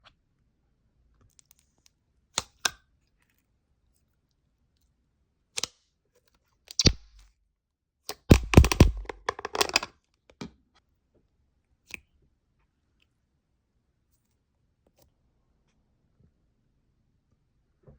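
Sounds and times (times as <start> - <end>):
slime squished by hand popping: 6.7 - 7.2, 8.1 - 9.8.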